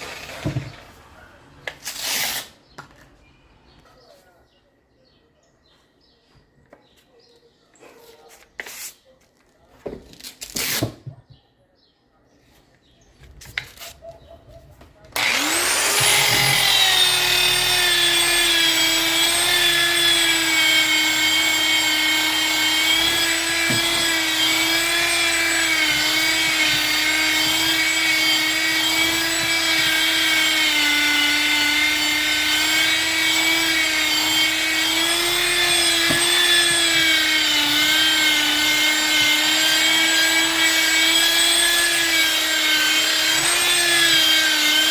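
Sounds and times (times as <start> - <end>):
power tool motor whining: 0.0 - 0.9, 15.1 - 44.9.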